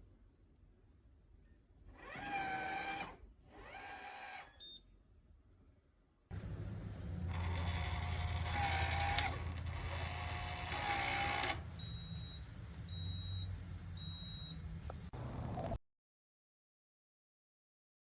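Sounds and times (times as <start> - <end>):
lock motor whirring: 7.2 - 12.1.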